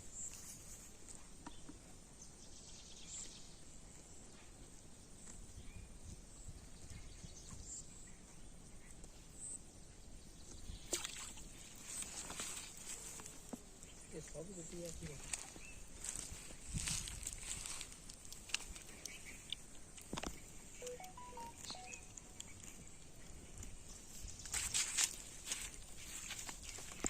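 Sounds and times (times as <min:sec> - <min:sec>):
faint high chirps: 0:20.7 - 0:22.9.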